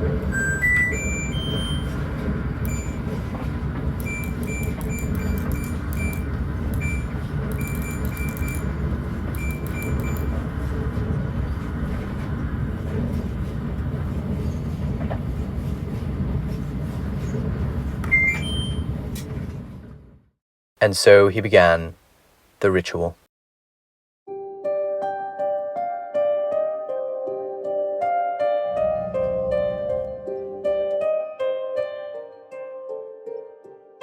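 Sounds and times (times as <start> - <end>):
steady low rumble: 0.0 - 20.0
rising two-note chime: 0.3 - 2.0
short high beeps: 0.3 - 2.0, 2.7 - 3.0, 4.0 - 6.2, 6.8 - 8.7, 9.4 - 10.3.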